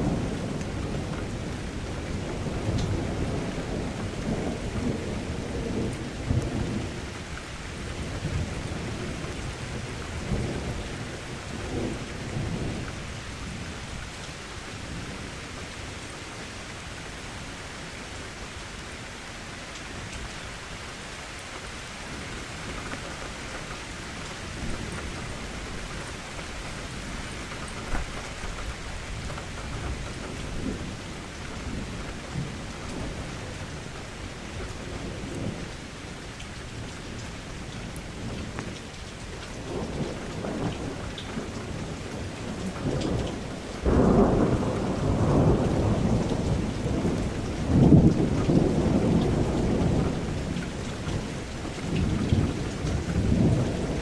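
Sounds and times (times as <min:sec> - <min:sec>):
thunder rumbling: 0:00.0 - 0:14.0, 0:22.0 - 0:35.8, 0:39.5 - 0:54.0
steady rain: 0:00.0 - 0:54.0.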